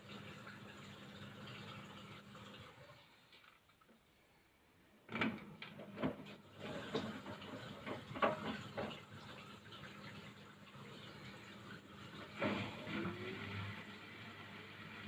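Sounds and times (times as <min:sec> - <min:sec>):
washing machine drum turning: 0:05.1 - 0:09.1.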